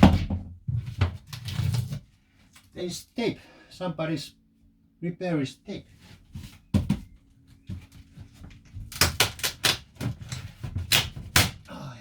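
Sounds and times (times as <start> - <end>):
wood cracking and knocking: 0.0 - 2.0, 6.7 - 11.7.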